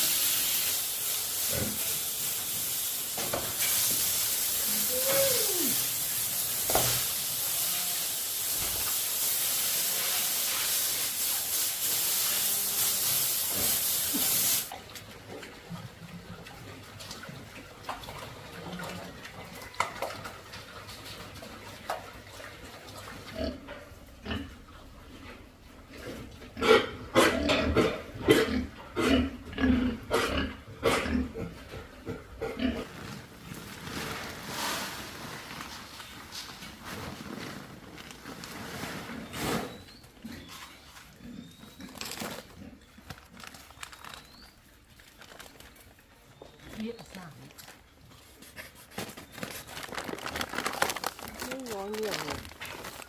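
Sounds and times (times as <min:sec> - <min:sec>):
pigs coughing: 0:26.5 - 0:32.9.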